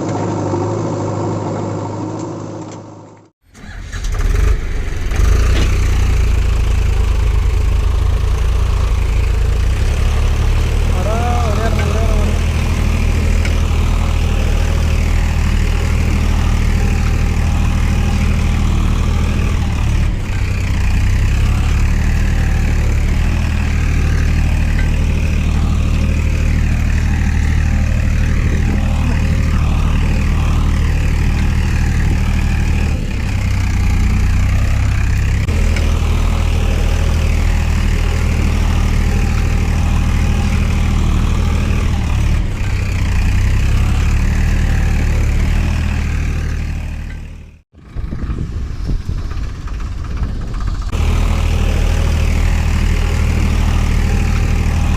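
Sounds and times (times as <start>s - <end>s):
heavy engine running: 0.0s - 54.9s.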